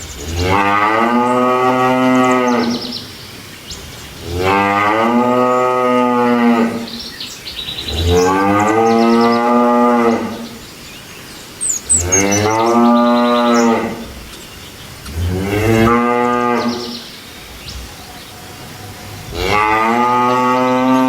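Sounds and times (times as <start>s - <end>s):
cattle mooing: 0.4s - 2.9s, 4.4s - 6.9s, 15.1s - 17.0s, 18.0s - 21.0s.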